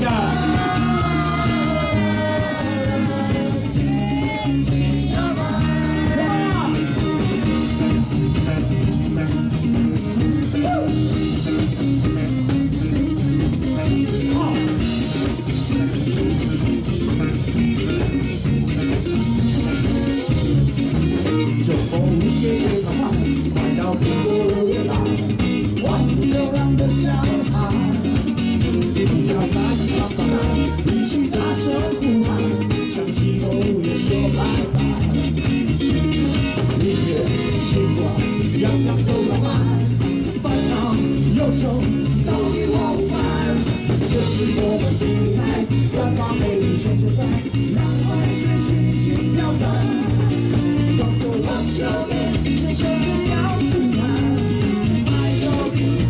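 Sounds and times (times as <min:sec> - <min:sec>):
sung melody sliding in pitch: 0:00.0 - 0:08.7
live rock band playing: 0:00.0 - 0:56.0.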